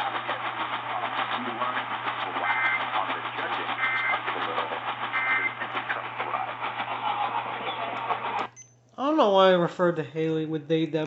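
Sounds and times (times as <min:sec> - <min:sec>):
radio static: 0:00.0 - 0:08.5
two-tone warbling data bursts: 0:03.8 - 0:04.2, 0:05.1 - 0:05.6.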